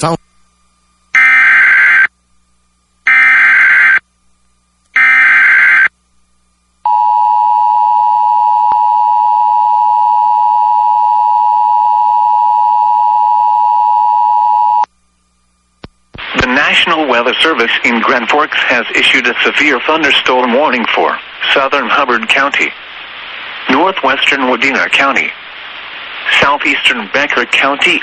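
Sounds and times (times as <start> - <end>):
steady attention tone: 6.8 - 14.9.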